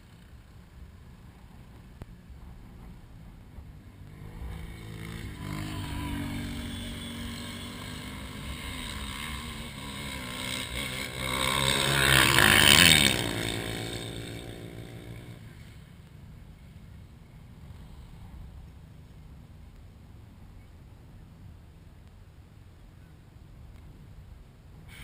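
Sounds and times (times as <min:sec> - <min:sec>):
atv engine at high revs: 0:04.0 - 0:15.8.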